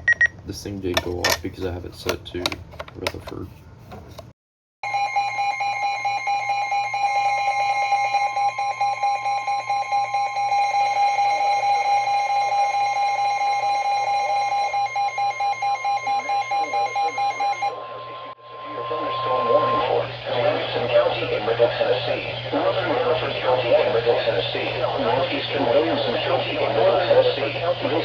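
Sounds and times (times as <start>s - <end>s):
rapid pulsing beep: 4.8s - 22.5s
steady high alarm tone: 4.8s - 28.0s.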